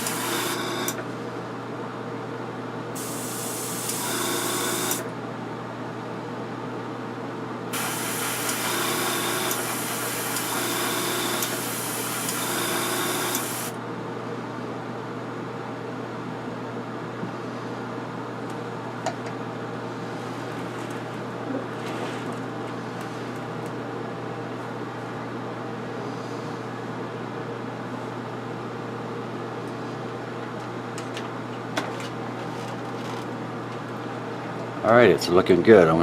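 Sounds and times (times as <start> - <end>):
spray paint hiss: 7.8 - 8.8.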